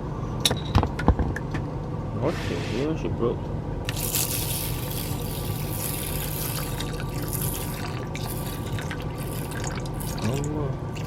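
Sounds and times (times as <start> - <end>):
water pouring into pot: 5.5 - 11.0.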